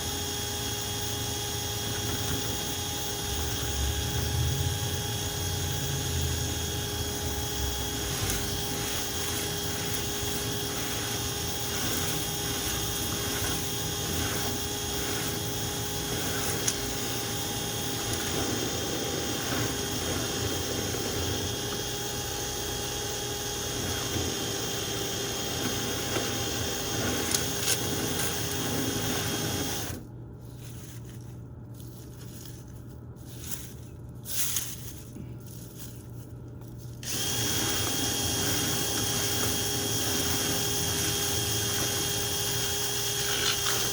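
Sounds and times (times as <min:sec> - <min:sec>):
power drill motor whine: 0:00.0 - 0:30.1, 0:37.0 - 0:43.9
brush scraping duct: 0:07.9 - 0:22.0, 0:26.9 - 0:43.9.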